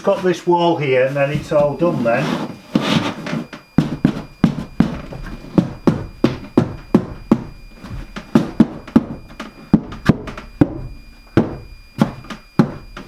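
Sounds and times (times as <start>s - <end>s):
steady hammering: 1.3s - 13.0s.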